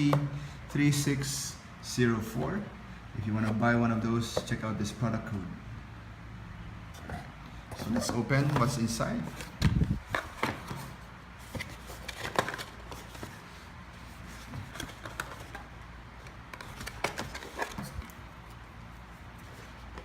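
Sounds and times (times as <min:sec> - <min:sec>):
packaging clicks and rustles: 0:07.8 - 0:13.5, 0:14.4 - 0:18.6.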